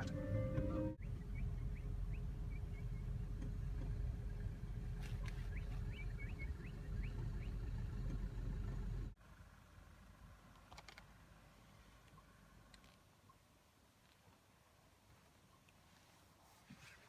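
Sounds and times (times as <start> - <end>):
low rumble with hum: 0.0 - 12.9
small bird chirping: 1.0 - 3.3, 5.1 - 7.9.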